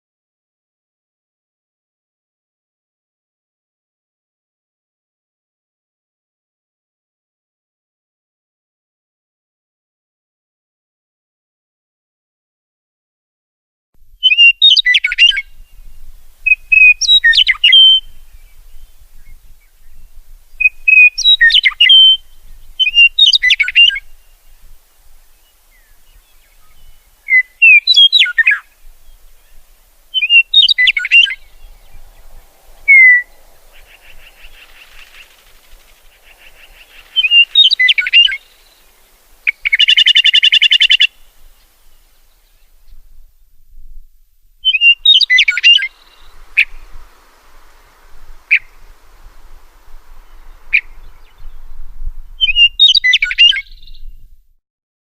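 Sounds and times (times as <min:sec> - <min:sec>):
buzzy bird trill: 0:14.2 - 0:19.0, 0:20.6 - 0:24.5, 0:25.5 - 0:42.0, 0:44.6 - 0:54.0
songbird whistling: 0:14.2 - 0:24.6, 0:25.4 - 0:43.0, 0:44.6 - 0:54.2.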